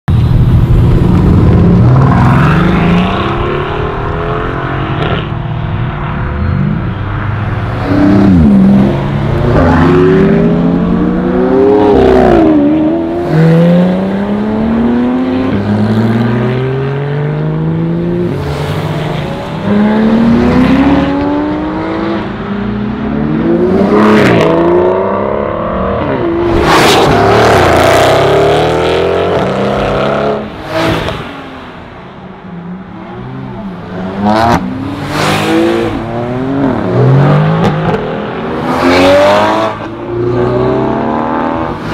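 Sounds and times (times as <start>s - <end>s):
sports car engines accelerating: 0.2s - 31.8s
cars passing close by: 0.2s - 41.9s.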